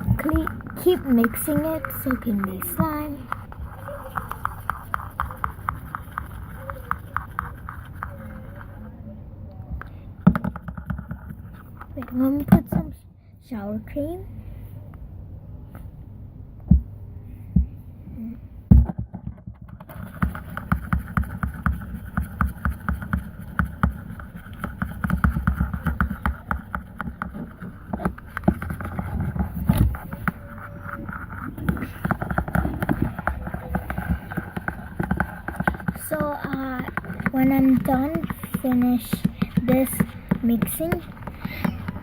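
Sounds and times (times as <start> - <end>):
utensil tapping against pan: 0.0 - 8.7.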